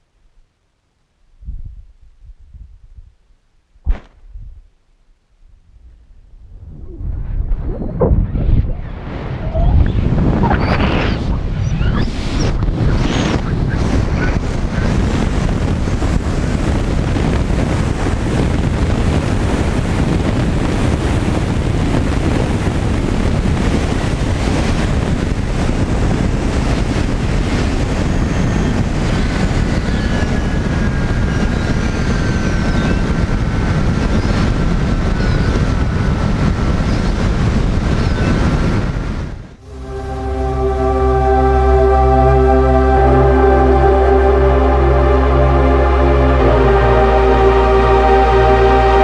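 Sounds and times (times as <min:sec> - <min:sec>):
wind rushing over microphone: 0:05.6 - 0:49.0
high wavering whine: 0:39.6 - 0:49.0.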